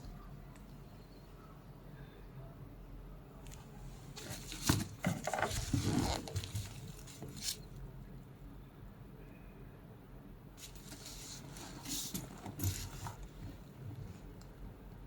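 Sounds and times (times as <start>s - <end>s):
packaging rustling and crinkling: 4.2s - 7.7s, 10.6s - 13.6s.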